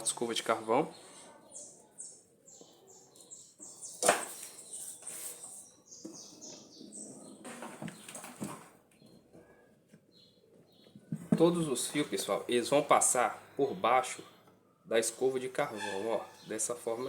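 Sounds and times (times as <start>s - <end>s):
small bird chirping: 0.0s - 8.3s, 8.9s - 12.6s
handling knocks and rustles: 3.9s - 5.4s, 7.4s - 10.0s, 10.8s - 11.9s.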